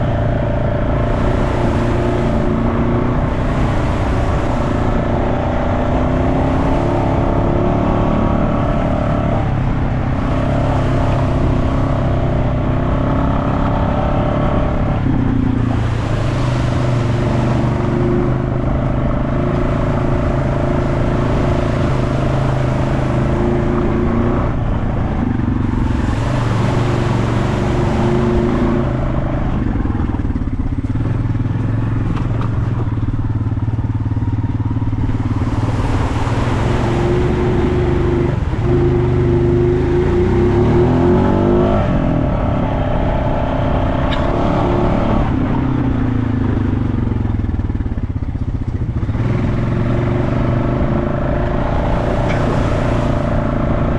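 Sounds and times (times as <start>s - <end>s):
off-road vehicle engine revving: 0.0s - 53.9s.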